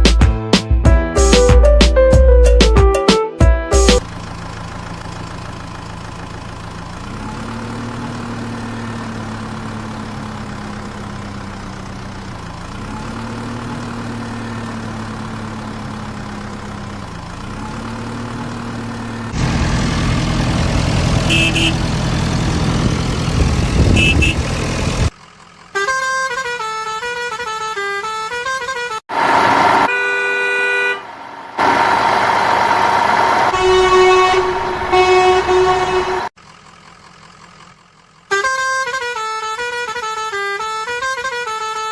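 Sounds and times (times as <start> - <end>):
short tune: 0.0 - 4.0, 31.6 - 36.3
vehicle engine running: 3.4 - 27.8, 29.1 - 30.1, 31.0 - 41.9
short horn beeps: 21.3 - 21.8, 23.9 - 24.5, 33.5 - 36.3, 38.3 - 41.9.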